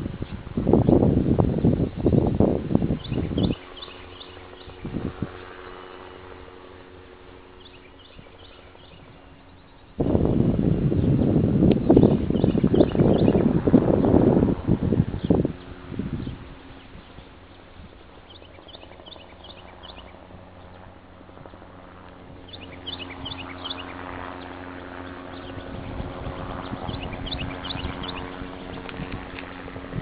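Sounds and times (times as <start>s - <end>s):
distant motor hum: 0.0s - 30.0s
songbird chirping: 3.0s - 4.8s, 15.2s - 20.8s, 22.4s - 25.7s.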